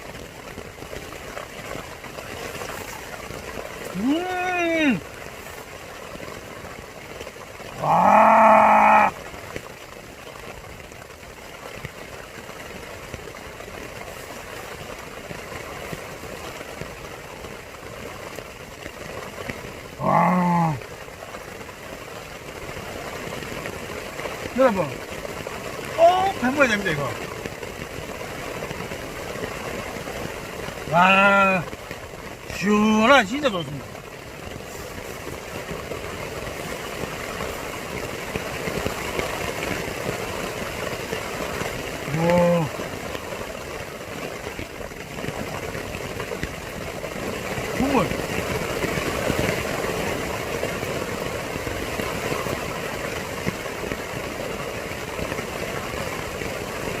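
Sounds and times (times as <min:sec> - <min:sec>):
rain on a tent: 0:00.0 - 0:57.0
man exclaiming loudly: 0:03.9 - 0:05.0, 0:26.0 - 0:26.9, 0:42.1 - 0:42.7.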